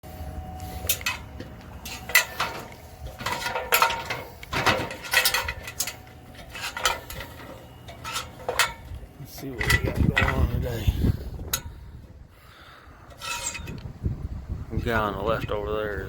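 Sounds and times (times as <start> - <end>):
low hum: 0.0 - 14.8
metal clinks and clanks: 0.8 - 10.6, 13.1 - 13.8.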